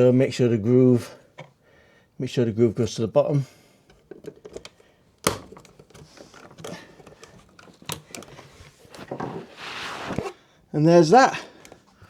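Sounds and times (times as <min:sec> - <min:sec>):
rustling handling noise: 0:03.9 - 0:10.5
plastic cover snapping on: 0:04.1 - 0:10.4.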